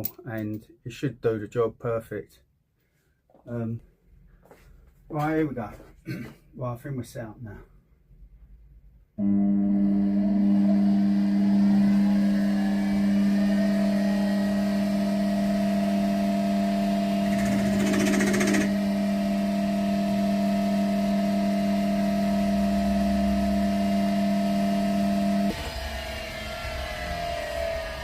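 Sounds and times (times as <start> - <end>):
metal lathe motor humming: 9.2 - 27.9.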